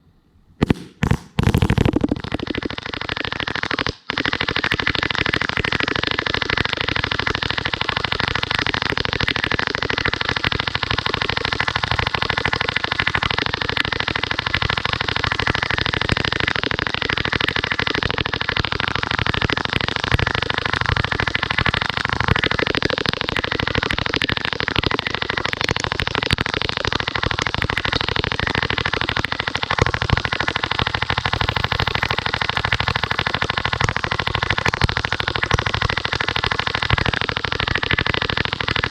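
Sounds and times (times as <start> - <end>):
rapid bb machine gun fire: 0.6 - 2.7.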